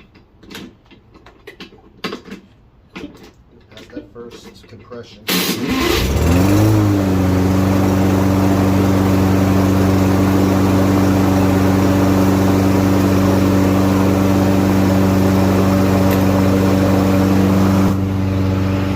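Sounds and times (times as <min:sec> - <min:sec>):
lawn mower engine running: 0:05.3 - 0:18.9.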